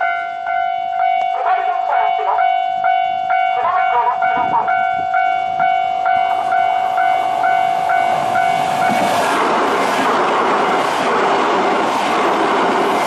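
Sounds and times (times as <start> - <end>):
electronic crossing bell: 0.0 - 9.0
steady alarm tone: 0.0 - 9.2
recorded voice announcement: 1.2 - 2.6, 3.4 - 4.8
train rushing past: 4.1 - 13.0.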